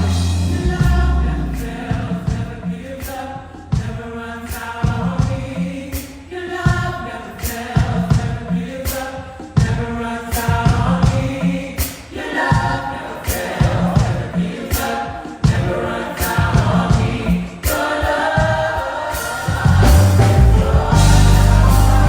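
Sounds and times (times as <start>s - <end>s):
electric bass playing: 0.0s - 3.0s, 19.7s - 22.0s
cymbal strokes: 0.0s - 4.7s, 19.1s - 22.0s
gospel choir singing: 0.0s - 22.0s.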